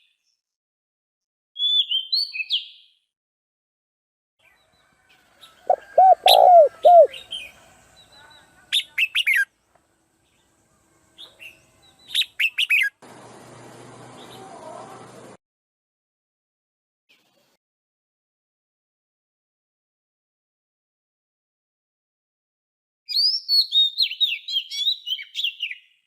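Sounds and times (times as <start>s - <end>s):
high bird chirping: 5.6s - 9.4s
lower arching bird notes: 5.7s - 7.7s.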